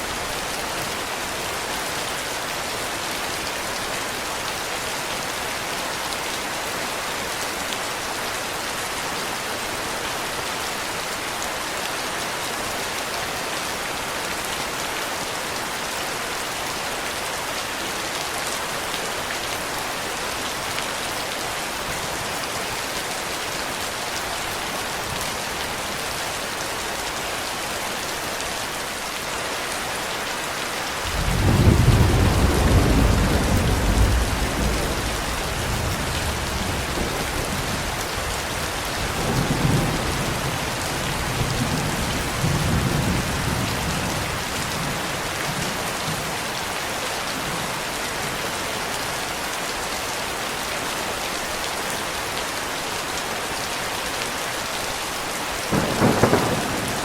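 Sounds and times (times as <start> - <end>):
heavy rain: 0.0 - 57.0
thunder rumbling: 31.1 - 40.6, 55.7 - 57.0.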